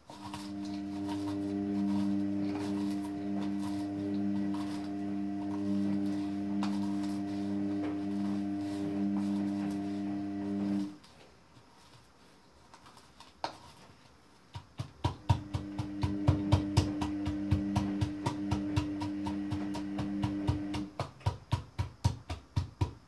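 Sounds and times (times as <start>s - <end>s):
steady hum: 0.0s - 11.0s, 15.1s - 20.9s
sharp knocking of walnuts crushed: 14.7s - 23.0s.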